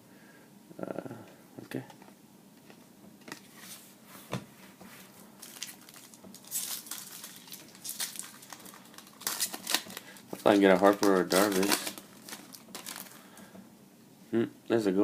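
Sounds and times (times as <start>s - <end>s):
foil wrapper crinkling and tearing: 5.4s - 13.3s.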